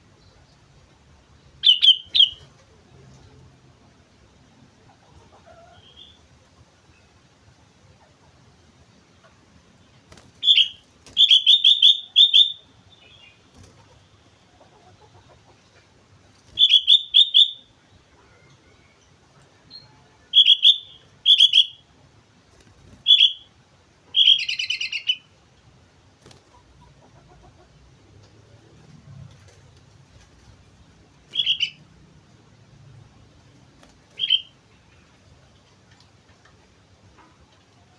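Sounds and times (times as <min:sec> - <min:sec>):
bird singing: 0:01.5 - 0:02.5, 0:10.4 - 0:13.5, 0:16.5 - 0:17.7, 0:18.3 - 0:21.9, 0:23.0 - 0:23.5, 0:24.1 - 0:25.3, 0:31.3 - 0:31.9, 0:34.1 - 0:35.2.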